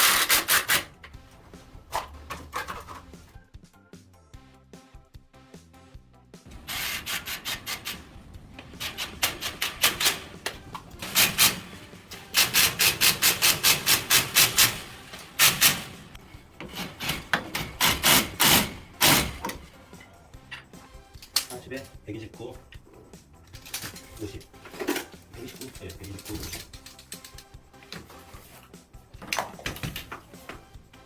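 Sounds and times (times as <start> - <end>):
rapid rhythmic scraping: 0.0 - 3.4, 6.5 - 20.6
background music: 0.0 - 31.0.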